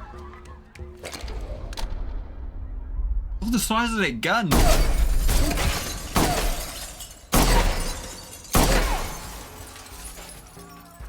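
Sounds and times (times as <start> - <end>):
faint music: 0.0 - 4.6
heavy gunshots: 4.5 - 9.3.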